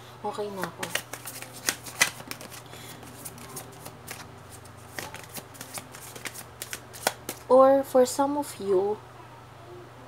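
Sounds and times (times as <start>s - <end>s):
cards being shuffled: 0.5s - 7.5s.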